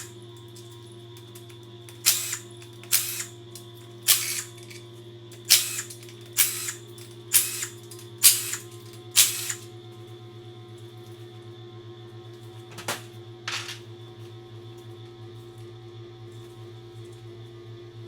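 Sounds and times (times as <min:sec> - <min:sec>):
steady low hum: 0:00.0 - 0:18.0
power tool bursts: 0:01.9 - 0:03.4, 0:04.0 - 0:04.8, 0:05.4 - 0:09.6.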